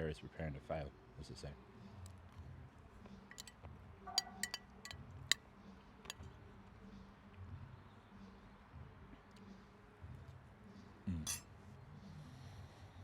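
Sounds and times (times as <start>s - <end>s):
cutlery clinking against a dish: 3.3s - 3.5s, 4.1s - 5.0s.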